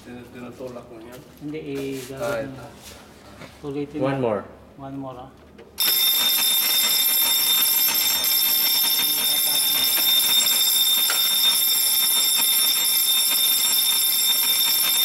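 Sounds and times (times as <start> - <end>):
fire alarm ringing: 5.8 - 15.0.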